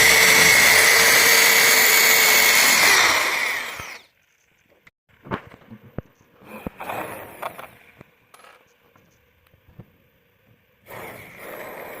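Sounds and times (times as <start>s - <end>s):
power drill running: 0.0s - 4.1s.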